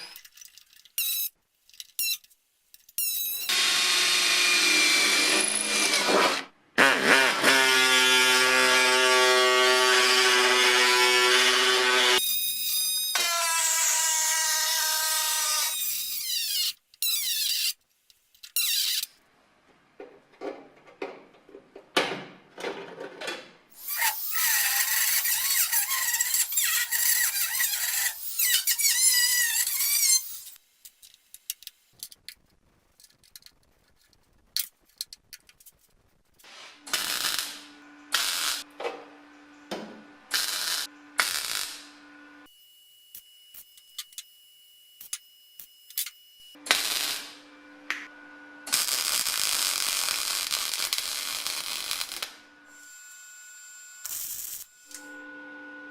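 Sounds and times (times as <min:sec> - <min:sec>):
rotary tool cutting steel: 0:03.4 - 0:16.7, 0:23.8 - 0:30.6.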